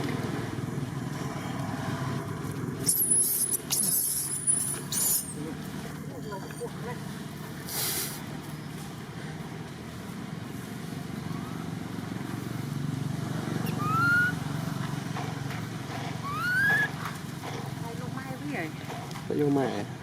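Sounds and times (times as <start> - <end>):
monkey squealing: 2.8 - 5.4, 13.6 - 14.4, 16.2 - 17.0.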